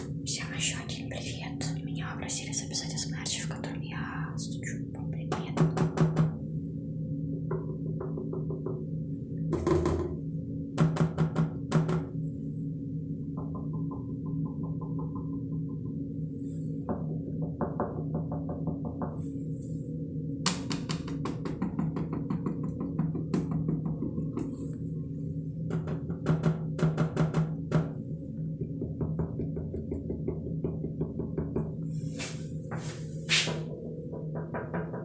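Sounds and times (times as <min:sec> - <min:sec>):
tapping on a hard object: 0:05.2 - 0:06.4, 0:07.5 - 0:08.9, 0:09.5 - 0:10.2, 0:10.8 - 0:12.2, 0:13.4 - 0:16.0, 0:16.9 - 0:19.3, 0:20.5 - 0:24.8, 0:25.7 - 0:32.0, 0:33.5 - 0:35.0.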